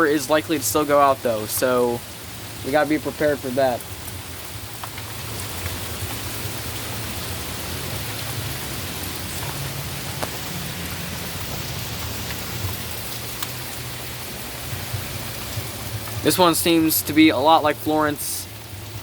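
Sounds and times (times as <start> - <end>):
heavy rain falling: 0.0 - 19.0
sharp raindrop hits: 0.0 - 19.0.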